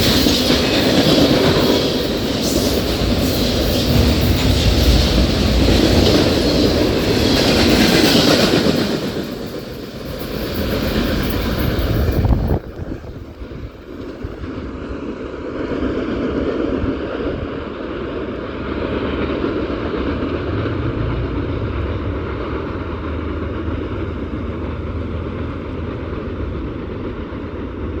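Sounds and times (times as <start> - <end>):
train wheels clicking over rails: 0.0 - 28.0
steady rumble: 18.5 - 28.0.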